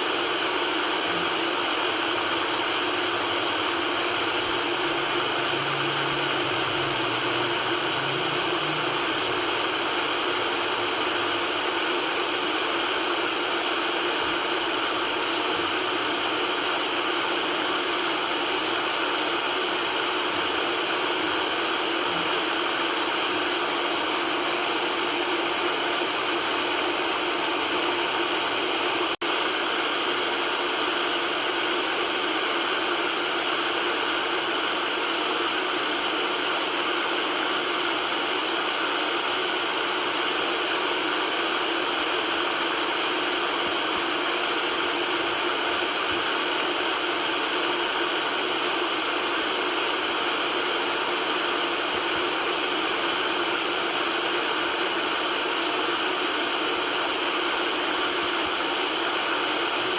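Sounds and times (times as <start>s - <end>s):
white noise hiss: 1.1s - 12.6s.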